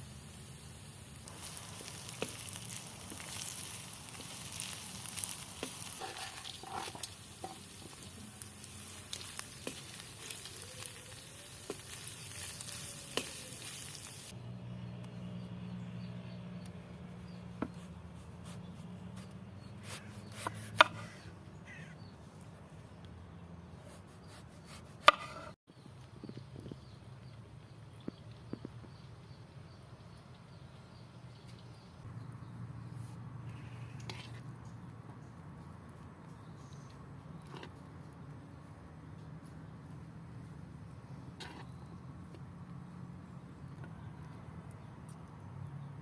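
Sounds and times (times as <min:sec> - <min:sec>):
food sizzling: 0:00.0 - 0:14.4.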